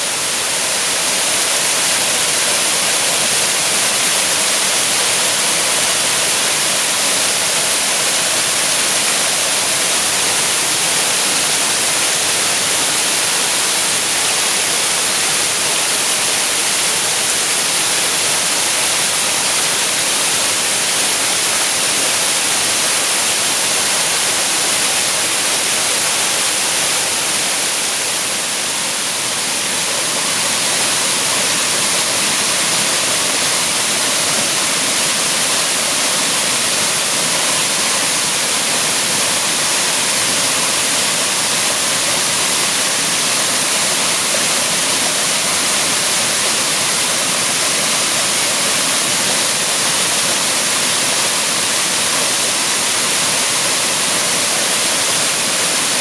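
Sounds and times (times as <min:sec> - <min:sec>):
waterfall pouring: 0:00.0 - 0:56.0.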